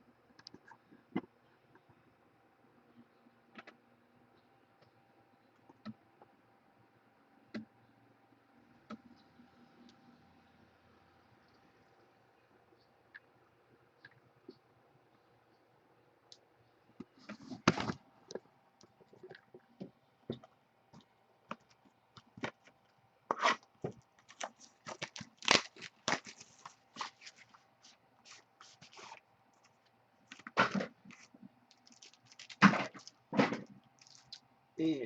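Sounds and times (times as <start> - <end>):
cards crackling and scraping: 23.3 - 33.3
wrappers crinkling and tearing: 24.2 - 29.2, 31.1 - 33.2, 34.0 - 34.4.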